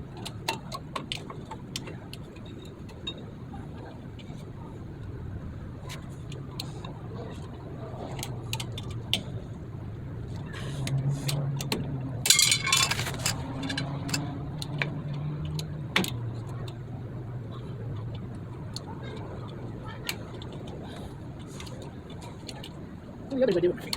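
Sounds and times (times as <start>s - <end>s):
low steady hum: 0.0s - 23.9s
metal parts clinking: 12.2s - 14.3s
metallic clatter and scrape: 12.2s - 14.3s.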